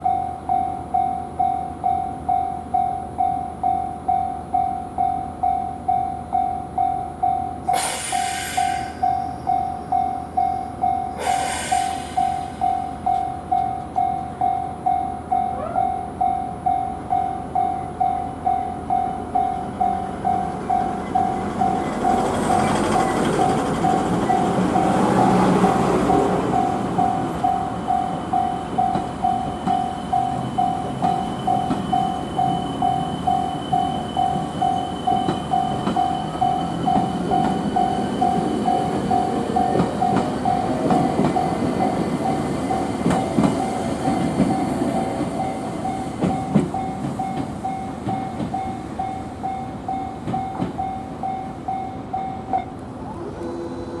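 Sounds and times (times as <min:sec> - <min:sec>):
electric freight train running: 0:00.0 - 0:54.0
train wheels clicking: 0:19.9 - 0:49.2, 0:49.9 - 0:51.3.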